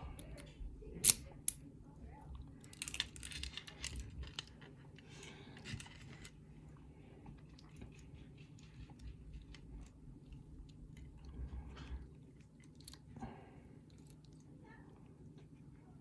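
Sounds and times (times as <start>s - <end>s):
light rattling of lock parts: 0.0s - 1.6s, 2.6s - 6.4s, 12.6s - 13.2s, 13.9s - 14.4s
metal lock parts clicking: 1.0s - 1.6s, 2.7s - 4.5s.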